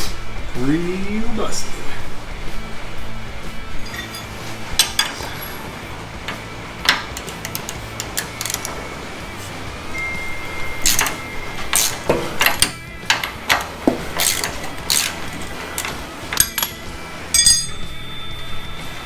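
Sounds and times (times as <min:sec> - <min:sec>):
hand tools clanking on metal: 0:00.0 - 0:19.0
sharp metallic strike ringing: 0:09.9 - 0:12.8, 0:16.4 - 0:18.9.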